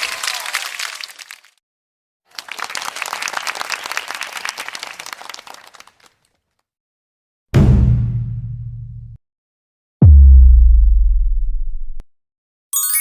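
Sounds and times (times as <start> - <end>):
crowd applauding: 0.0 - 1.6, 2.3 - 6.3.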